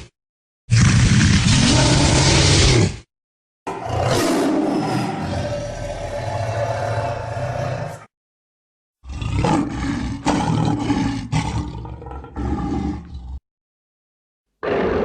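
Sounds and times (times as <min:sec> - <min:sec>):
monster roaring: 0:00.7 - 0:03.0, 0:03.7 - 0:08.1, 0:09.0 - 0:13.4, 0:14.6 - 0:15.0.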